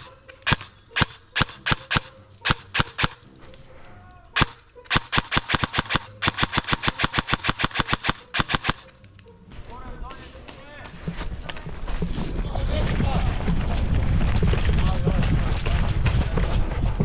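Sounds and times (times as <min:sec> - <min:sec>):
airsoft guns firing: 0:00.0 - 0:03.2, 0:04.4 - 0:09.0.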